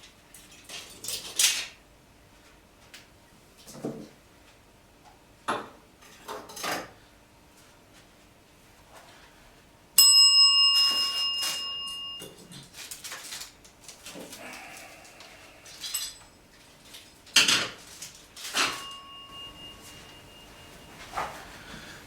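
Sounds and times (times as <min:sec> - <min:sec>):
metal cookware ringing: 0:10.0 - 0:12.4, 0:18.4 - 0:20.9.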